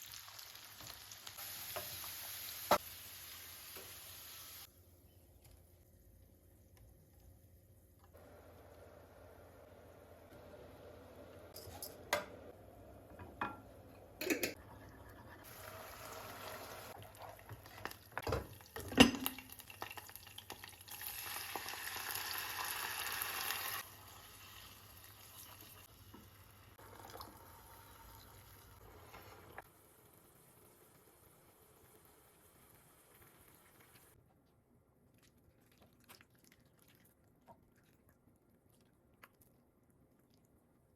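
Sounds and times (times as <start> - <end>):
dishes and utensils knocking: 13.2 - 14.6.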